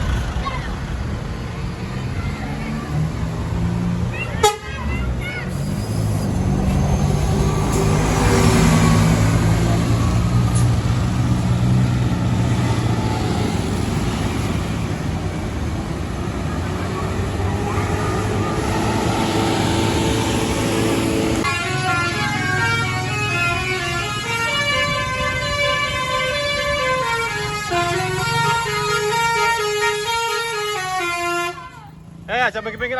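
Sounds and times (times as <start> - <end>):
bus engine running: 0.0 - 32.9
multi-note horn tune: 21.4 - 31.6.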